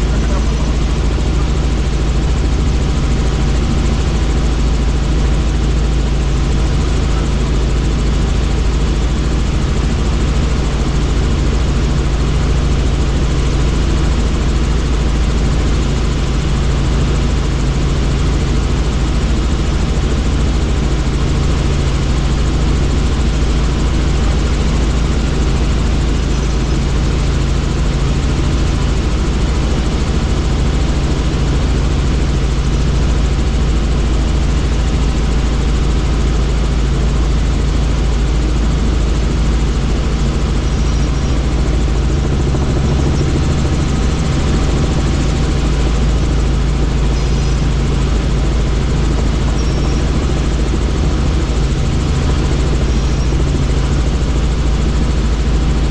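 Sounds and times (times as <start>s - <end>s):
helicopter engine and rotor: 0.0s - 55.9s.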